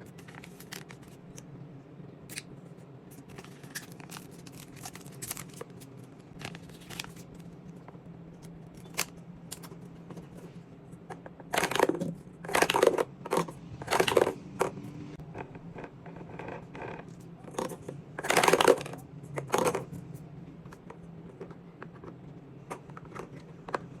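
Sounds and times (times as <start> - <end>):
packaging scraping or tearing: 3.1 - 7.4
packaging clicks: 3.1 - 7.5, 11.5 - 14.7.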